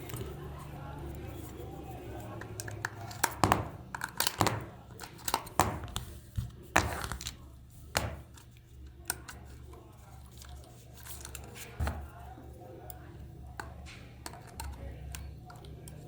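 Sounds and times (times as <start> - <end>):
sharp clicks and knocks: 2.4 - 6.1.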